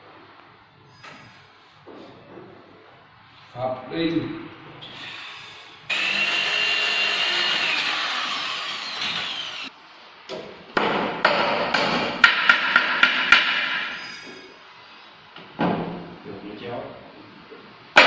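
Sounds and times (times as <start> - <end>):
power tool running: 5.0 - 9.7.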